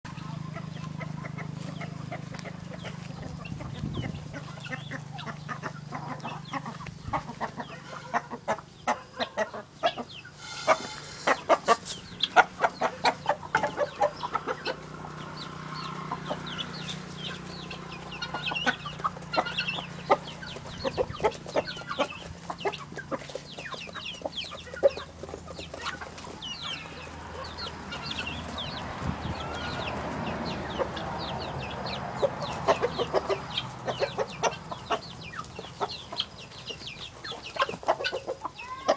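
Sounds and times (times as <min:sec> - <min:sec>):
chickens and guinea fowl calling: 0:00.1 - 0:38.9
rapid repeated bird calls: 0:00.1 - 0:38.9
short high bird calls: 0:10.2 - 0:12.2.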